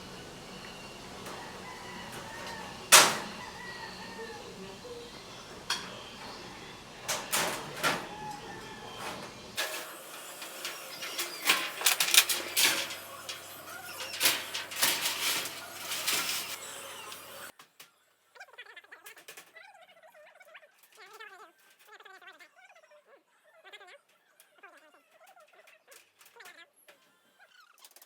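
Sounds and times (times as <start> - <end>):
metallic clicks on sheet-metal roofing: 0.0 - 17.5.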